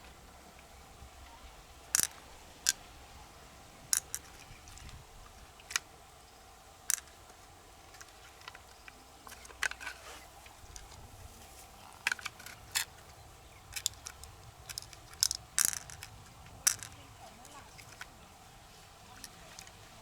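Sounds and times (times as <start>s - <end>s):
low steady hum: 0.0s - 20.0s
shells clicking and clacking: 1.9s - 2.8s, 3.9s - 5.0s, 5.6s - 5.9s, 6.9s - 10.0s, 10.6s - 11.0s, 11.8s - 13.0s, 13.6s - 18.2s, 19.2s - 19.9s.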